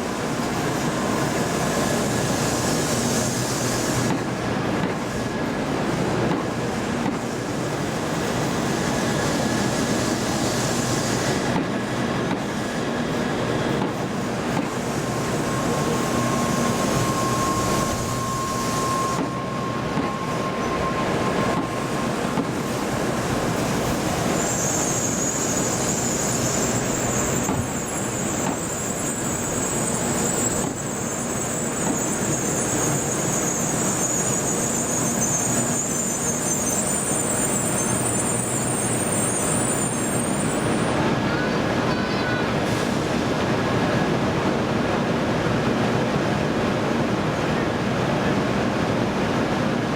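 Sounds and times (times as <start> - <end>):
train rolling over rails: 0.0 - 49.9
wheel squeal: 14.7 - 41.0
high-pitched whine: 15.0 - 26.2.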